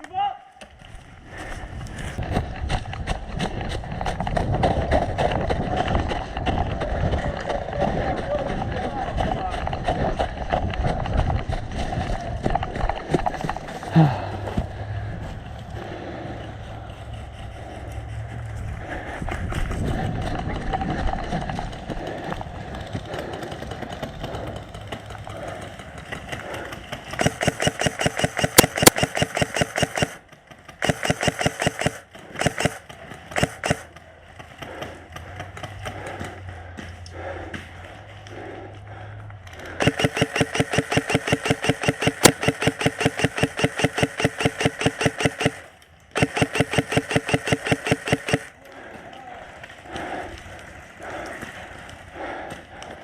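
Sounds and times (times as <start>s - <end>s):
airsoft gun full-auto bursts: 27.1s - 33.9s, 39.8s - 48.5s.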